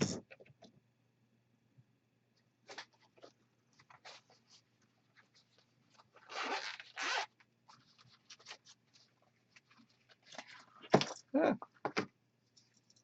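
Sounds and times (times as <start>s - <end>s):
rustles and scrapes of handling: 2.6s - 11.0s, 12.4s - 13.0s.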